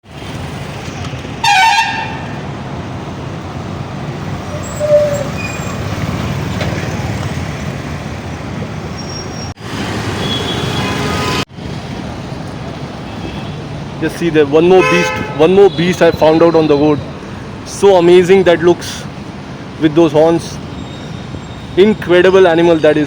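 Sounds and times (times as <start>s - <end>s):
street traffic: 0.0s - 23.0s
vehicle horn toot: 1.4s - 2.4s, 14.8s - 15.9s.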